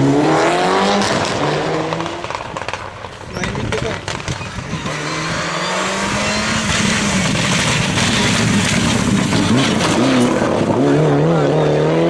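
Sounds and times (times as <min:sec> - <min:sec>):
rally car engine at high revs: 0:00.0 - 0:02.8, 0:03.7 - 0:12.0.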